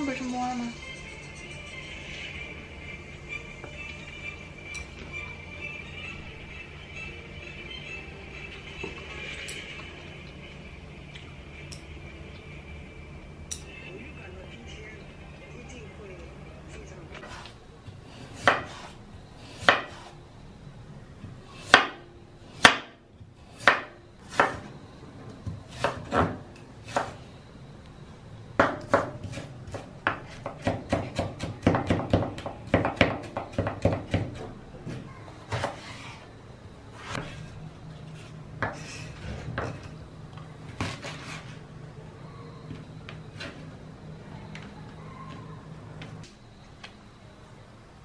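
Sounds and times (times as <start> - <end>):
dishes and utensils clinking: 4.6 - 5.1
knife chopping on wooden board: 18.4 - 18.9, 19.6 - 20.1, 23.6 - 24.7, 25.5 - 27.2, 28.6 - 34.5, 35.5 - 35.9.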